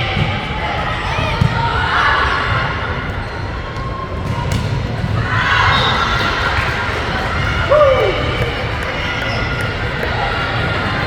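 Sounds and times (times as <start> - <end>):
crowd rumble: 6.7 - 11.0
people shouting: 7.6 - 8.7.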